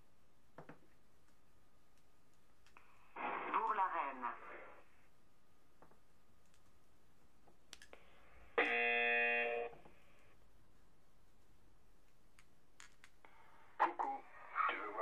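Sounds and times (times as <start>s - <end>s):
buzzer-like tone from small speaker: 8.6s - 9.8s.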